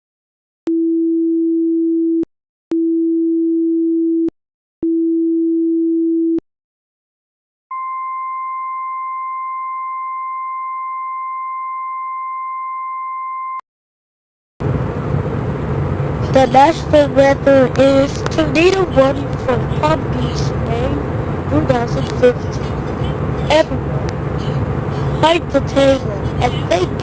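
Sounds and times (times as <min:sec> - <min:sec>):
loud noisy sound: 0:14.6 - 0:27.0
steady high alert tone: 0:16.2 - 0:27.0.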